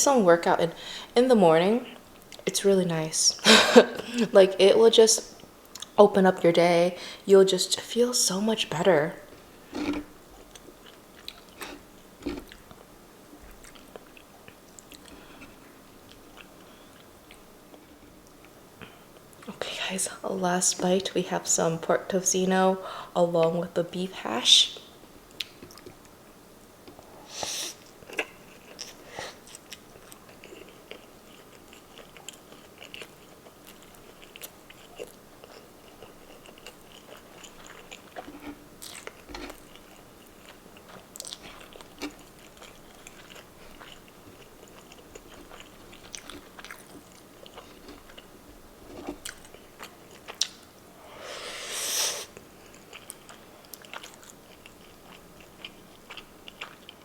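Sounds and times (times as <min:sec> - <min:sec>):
close chewing: 0:09.3 - 0:18.6, 0:28.0 - 0:50.7, 0:52.6 - 0:57.0.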